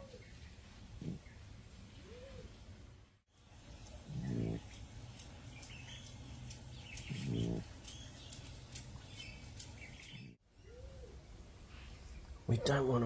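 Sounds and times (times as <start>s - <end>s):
possum snoring: 1.0s - 1.3s, 4.0s - 4.8s, 7.1s - 7.7s.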